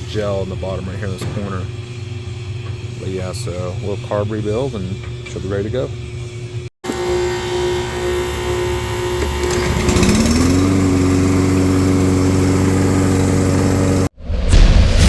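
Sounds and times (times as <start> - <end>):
lawn mower engine running: 6.8 - 14.1.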